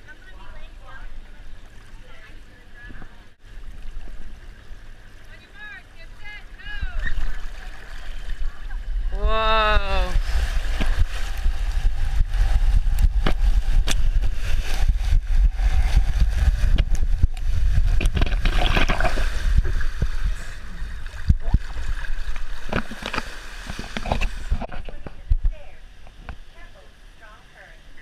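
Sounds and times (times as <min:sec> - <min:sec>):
water rushing and splashing: 0:00.0 - 0:28.0
wind buffeting microphone: 0:08.3 - 0:26.3.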